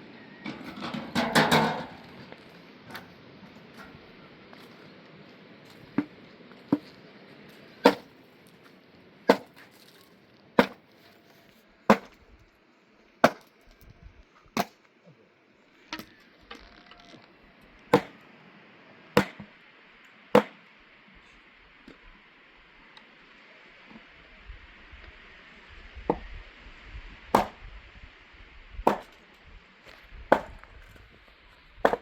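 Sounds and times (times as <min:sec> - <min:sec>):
firewood being chopped: 0:05.7 - 0:07.0, 0:07.8 - 0:08.2, 0:09.2 - 0:10.0, 0:10.6 - 0:11.1, 0:11.9 - 0:12.2, 0:13.2 - 0:13.6, 0:14.6 - 0:14.8, 0:17.9 - 0:18.2, 0:19.2 - 0:19.5, 0:20.3 - 0:20.6, 0:27.3 - 0:27.6, 0:28.8 - 0:29.2, 0:30.3 - 0:30.8.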